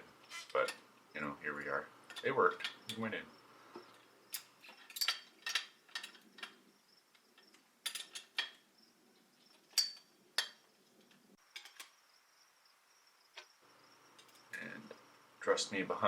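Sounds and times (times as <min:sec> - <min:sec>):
metal bike parts clinking: 0:02.1 - 0:03.1, 0:03.8 - 0:08.6, 0:09.5 - 0:12.0.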